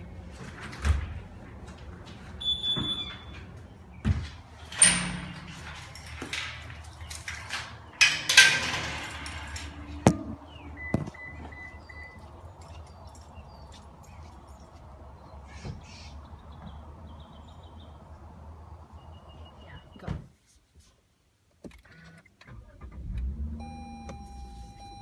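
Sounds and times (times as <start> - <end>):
knocks and clatter: 0.3 - 14.8.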